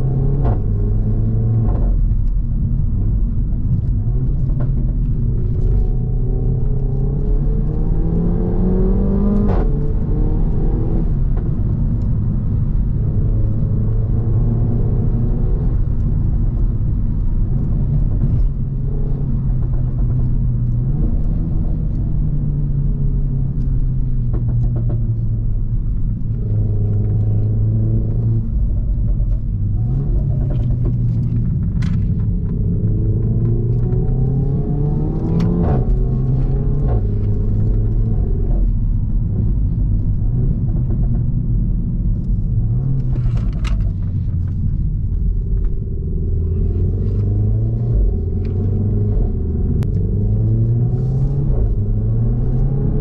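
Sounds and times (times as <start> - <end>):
car engine accelerating hard: 0.0 - 53.0
exhaust cracks: 10.9 - 53.0.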